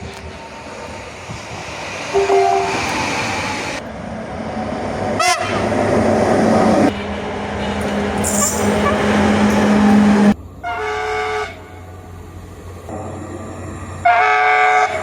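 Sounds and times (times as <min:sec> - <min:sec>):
train running hum: 0:00.0 - 0:15.0
train horn blasts: 0:02.2 - 0:03.2, 0:05.2 - 0:05.6, 0:10.6 - 0:11.8, 0:14.0 - 0:15.0.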